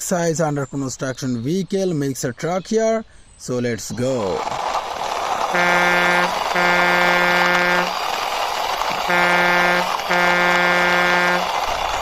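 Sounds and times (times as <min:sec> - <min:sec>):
truck horn honking: 0:05.5 - 0:08.0, 0:08.9 - 0:12.0.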